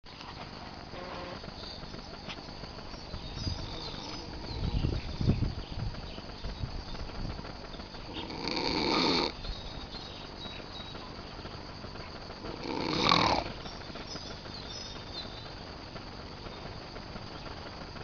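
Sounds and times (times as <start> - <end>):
man snoring: 8.2 - 9.4, 12.6 - 13.5.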